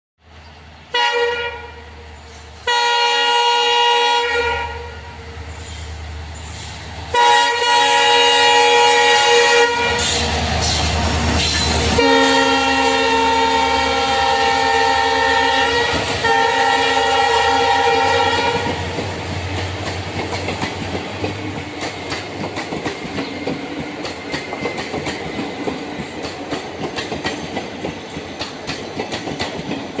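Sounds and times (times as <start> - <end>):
train horn blasts: 0.9 - 2.0, 2.6 - 5.4, 7.1 - 10.3, 11.6 - 18.9
train wheels clacking on rails: 7.7 - 30.0.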